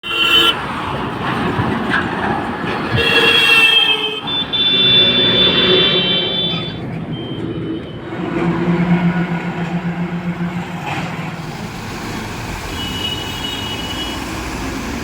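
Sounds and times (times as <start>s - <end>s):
high-pitched metallic squeal: 2.9s - 11.8s
earth-moving machine engine: 7.1s - 15.0s.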